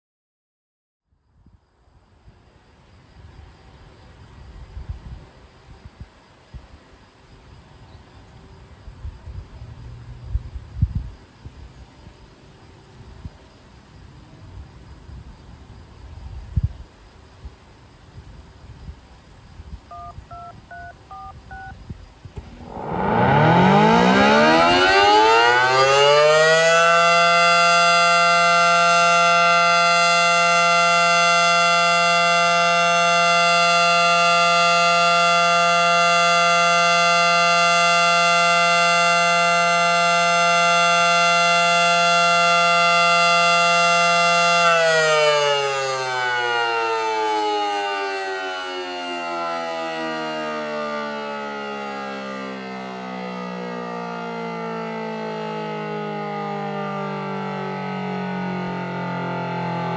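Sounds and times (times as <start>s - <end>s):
short touch-tone beeps: 19.9s - 21.8s
warning siren wailing: 22.4s - 59.9s.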